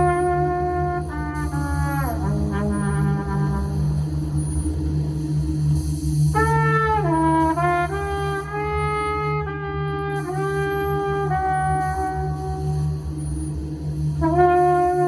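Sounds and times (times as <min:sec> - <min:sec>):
trumpet playing held notes: 0:00.0 - 0:04.0, 0:06.4 - 0:13.1, 0:14.2 - 0:15.0
low electronic drone: 0:00.0 - 0:15.0.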